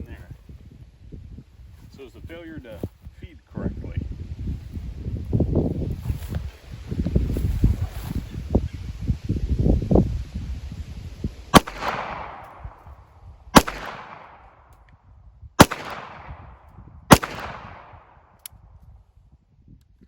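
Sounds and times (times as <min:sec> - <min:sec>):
pistol shots with echo: 0:11.6 - 0:12.8, 0:13.6 - 0:14.6, 0:15.6 - 0:18.2.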